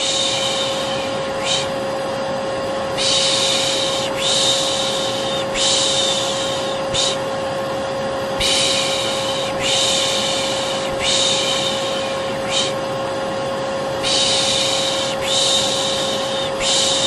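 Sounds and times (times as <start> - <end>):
person shushing: 0.0 - 1.8, 3.0 - 7.3, 8.4 - 12.8, 14.0 - 17.0
vacuum cleaner motor humming: 0.0 - 17.0.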